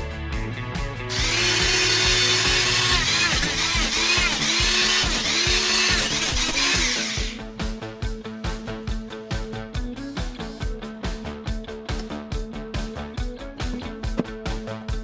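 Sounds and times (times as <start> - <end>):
background music: 0.0 - 15.0
power tool running hard: 1.1 - 7.5.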